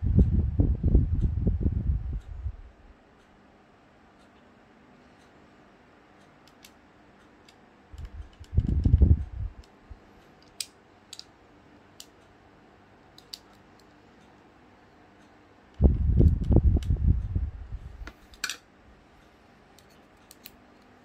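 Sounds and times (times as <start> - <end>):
small tools clicking and tapping: 18.1 - 18.6, 19.8 - 21.0.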